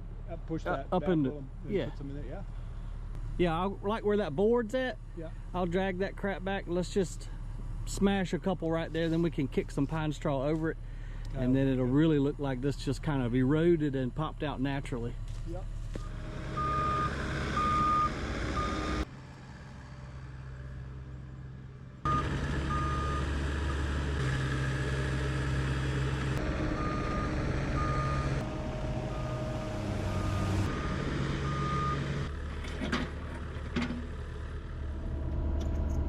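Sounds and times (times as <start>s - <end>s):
excavator diesel engine: 15.0s - 36.0s
travel alarm beeping: 16.6s - 18.9s, 22.1s - 23.3s, 26.6s - 28.4s.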